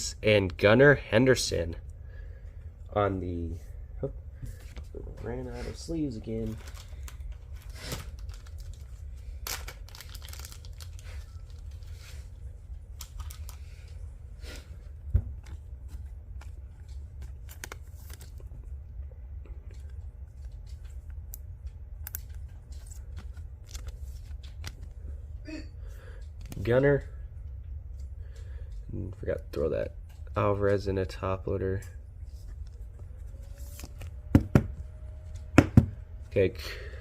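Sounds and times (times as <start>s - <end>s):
steady low hum: 0.0s - 37.0s
plastic crinkling and rustling: 5.8s - 14.0s.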